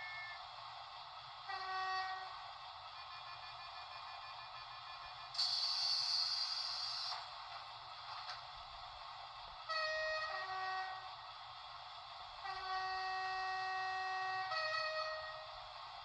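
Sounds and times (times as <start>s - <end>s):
small speaker train horn: 0.0s - 0.5s, 1.4s - 3.9s, 9.6s - 11.3s, 12.4s - 15.9s.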